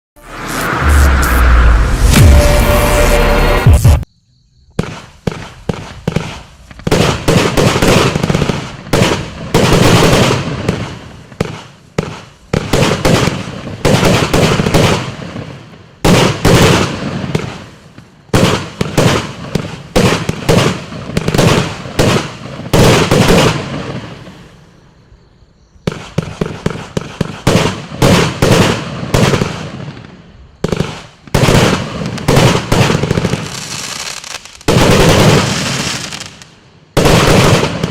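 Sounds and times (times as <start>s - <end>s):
fireworks aerial bursts: 0.2s - 4.1s, 4.8s - 24.8s, 25.8s - 37.9s
fireworks launch thumps: 4.8s - 9.2s.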